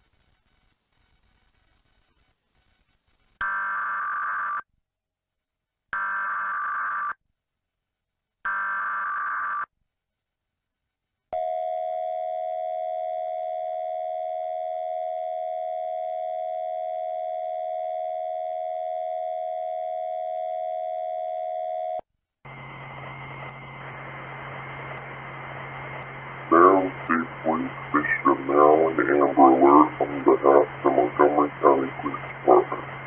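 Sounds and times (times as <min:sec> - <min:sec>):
low hum with hiss: 0:22.5 - 0:33.0.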